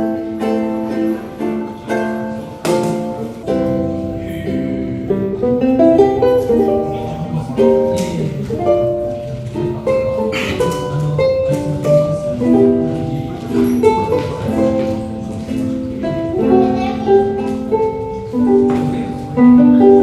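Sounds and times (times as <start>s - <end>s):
plucked string instrument melody: 0.0s - 20.0s.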